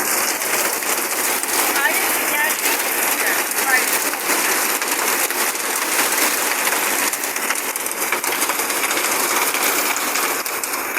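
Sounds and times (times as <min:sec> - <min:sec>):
hail ticking: 0:00.0 - 0:10.9
heavy rain hissing: 0:00.0 - 0:10.9.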